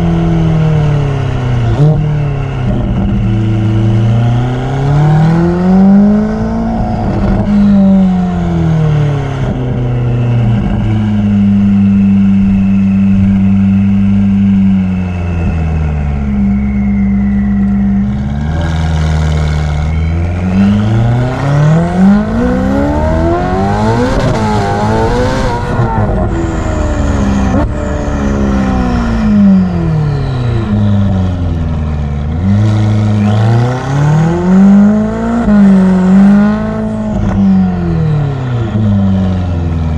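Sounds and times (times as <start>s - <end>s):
car engine revving: 0.0s - 39.9s
turbo whistle: 14.6s - 18.7s, 33.0s - 34.5s.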